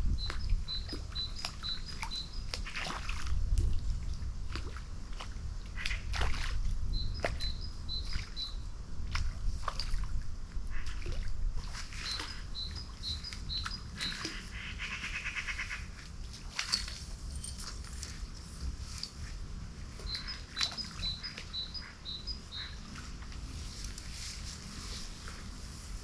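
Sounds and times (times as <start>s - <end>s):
birds calling: 0.2s - 3.0s, 11.9s - 16.0s, 20.0s - 23.0s.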